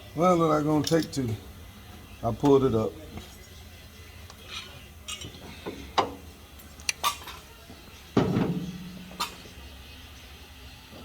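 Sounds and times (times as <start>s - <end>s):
metal tools clinking: 0.6s - 1.4s, 4.4s - 5.5s.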